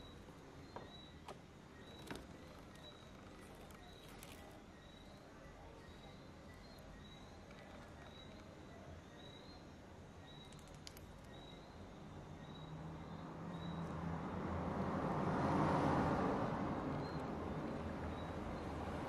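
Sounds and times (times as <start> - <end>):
vehicle passing by: 12.7 - 19.0.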